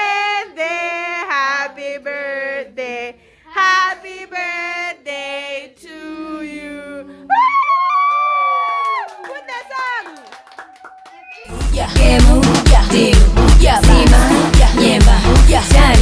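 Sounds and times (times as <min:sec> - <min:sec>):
people singing birthday song: 0:00.0 - 0:07.3, 0:11.5 - 0:16.0.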